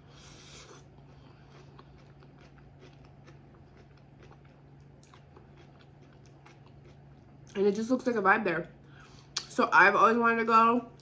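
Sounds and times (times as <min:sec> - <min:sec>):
low steady hum: 0:00.0 - 0:11.0
faint chewing of food: 0:00.1 - 0:07.6.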